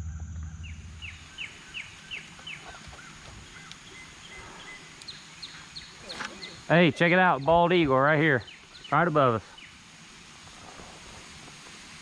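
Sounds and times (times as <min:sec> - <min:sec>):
eagle high chirps: 0:00.4 - 0:06.8.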